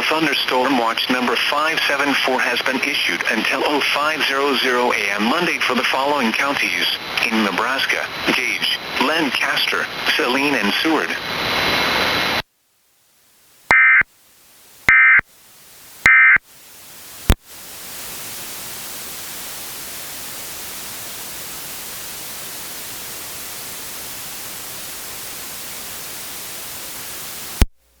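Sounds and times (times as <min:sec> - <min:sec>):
radio static hiss: 0:00.0 - 0:12.5, 0:13.6 - 0:14.0, 0:14.8 - 0:28.0
shrill two-tone data bursts: 0:13.7 - 0:14.0, 0:14.9 - 0:15.2, 0:16.1 - 0:16.4.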